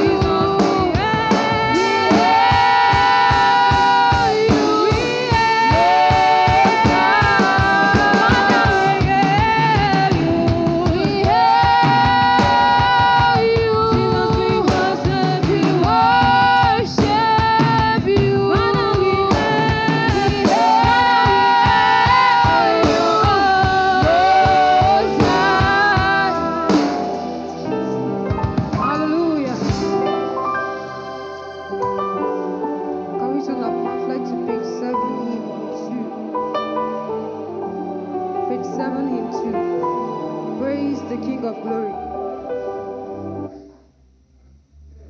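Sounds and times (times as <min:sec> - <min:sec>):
band with drums: 0:00.0 - 0:30.4
gospel worship song singing: 0:00.0 - 0:43.6.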